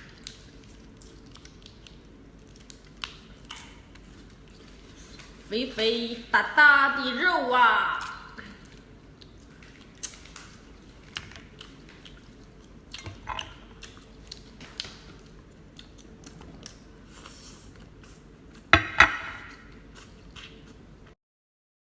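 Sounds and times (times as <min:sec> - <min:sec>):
chewing: 0:00.0 - 0:05.4, 0:08.0 - 0:18.7, 0:19.6 - 0:20.8.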